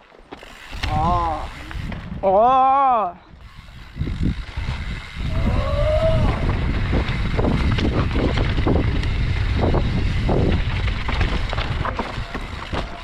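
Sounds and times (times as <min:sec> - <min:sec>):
bike knocking and rattling on rocks: 0:00.0 - 0:02.3, 0:06.2 - 0:13.0
wind buffeting microphone: 0:00.7 - 0:02.6, 0:03.3 - 0:13.0.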